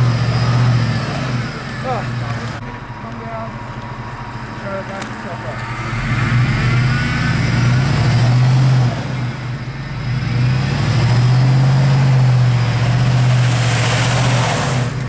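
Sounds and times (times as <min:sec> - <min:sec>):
vehicle engine revving hard: 0:00.0 - 0:02.6, 0:05.6 - 0:15.0.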